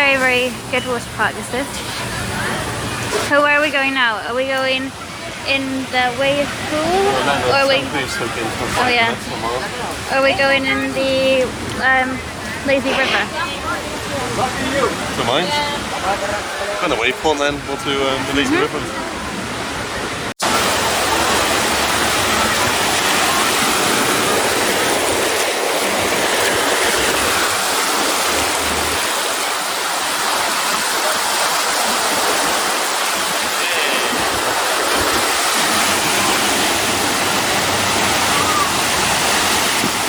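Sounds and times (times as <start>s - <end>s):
faint voices: 0.0s - 27.6s, 30.0s - 40.0s
water churning and splashing: 0.0s - 40.0s.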